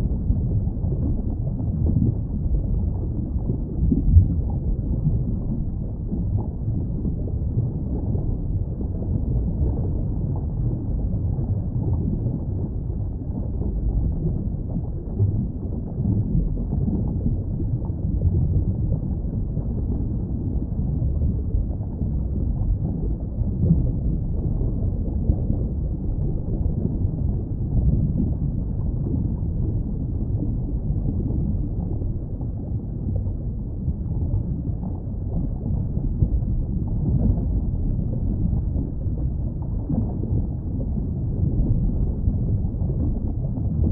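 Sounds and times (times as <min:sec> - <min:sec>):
muffled underwater rumble: 0:00.0 - 0:43.9.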